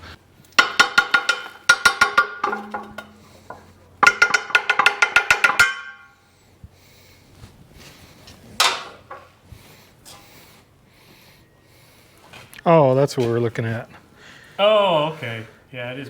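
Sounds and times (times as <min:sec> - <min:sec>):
rapid ringing metallic strikes: 0:00.6 - 0:06.2.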